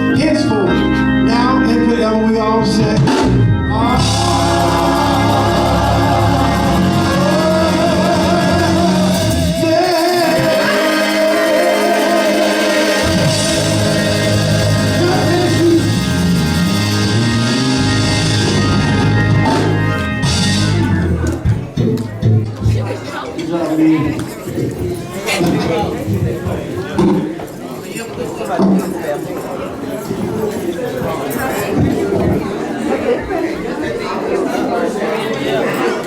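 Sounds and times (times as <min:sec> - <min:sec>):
band playing worship music: 0:00.0 - 0:33.1
low bass: 0:00.8 - 0:10.6, 0:12.4 - 0:22.5.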